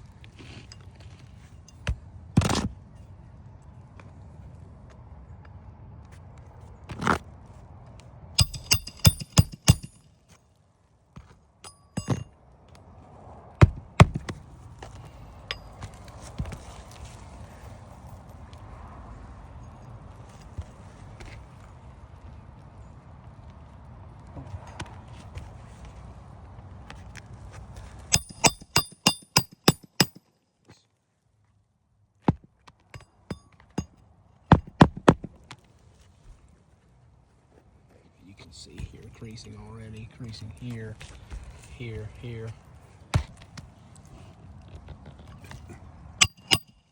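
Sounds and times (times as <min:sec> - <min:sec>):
hammer striking metal: 0:08.4 - 0:10.0, 0:11.6 - 0:12.3, 0:28.1 - 0:30.2, 0:46.2 - 0:46.8.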